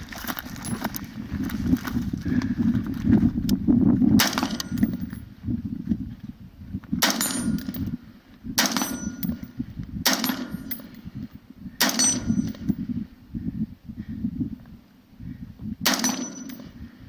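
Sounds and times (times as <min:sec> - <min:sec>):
bullet clanging on steel target: 0:04.2 - 0:05.2, 0:07.0 - 0:07.9, 0:08.6 - 0:09.5, 0:10.1 - 0:11.0, 0:11.8 - 0:12.8, 0:15.9 - 0:16.8
gunshots: 0:08.6 - 0:09.1, 0:10.1 - 0:10.8, 0:15.9 - 0:16.6.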